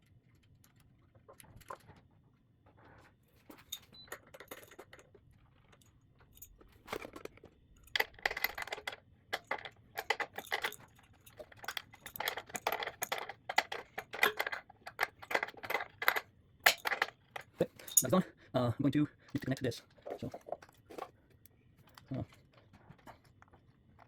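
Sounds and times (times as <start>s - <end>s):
metal hand tools clicking: 12.0s - 18.2s.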